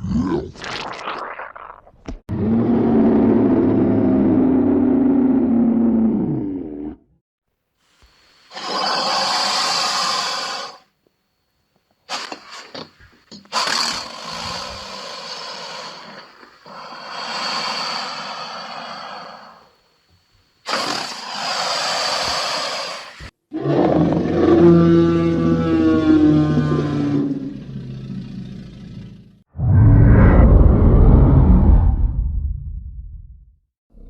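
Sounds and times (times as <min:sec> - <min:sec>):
dragon roars: 0:02.3 - 0:07.0, 0:13.6 - 0:19.5, 0:20.7 - 0:28.6, 0:29.6 - 0:32.5.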